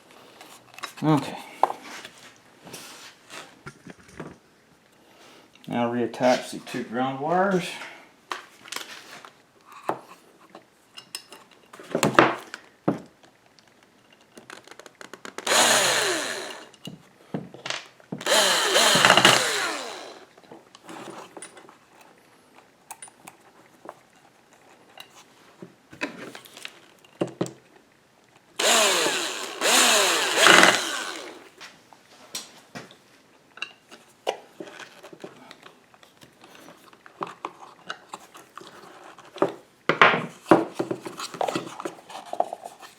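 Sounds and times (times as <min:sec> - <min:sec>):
power drill driving screws: 0:15.4 - 0:16.8, 0:18.2 - 0:20.3, 0:28.6 - 0:31.5.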